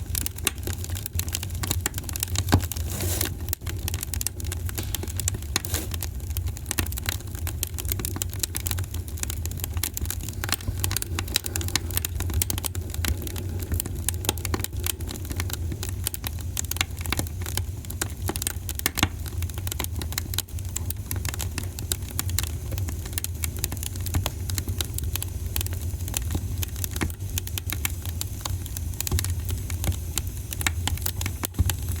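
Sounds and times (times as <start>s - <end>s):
wood fire crackling and popping: 0.0s - 32.0s
steady low rumble: 3.6s - 7.0s, 7.6s - 17.1s.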